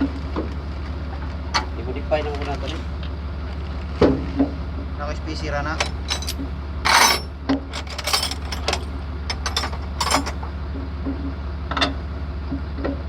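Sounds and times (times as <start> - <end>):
steady low hum: 0.0 - 11.6
metal tools clinking on steel: 5.7 - 10.4.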